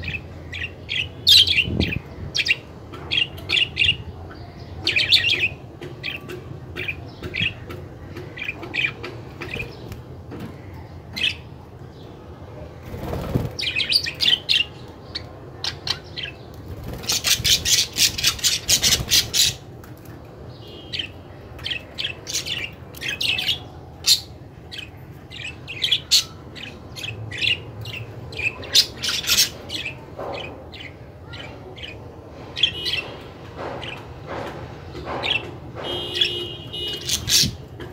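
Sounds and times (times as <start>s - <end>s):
budgies chirping and squawking: 15.2s - 19.6s, 36.9s - 37.6s.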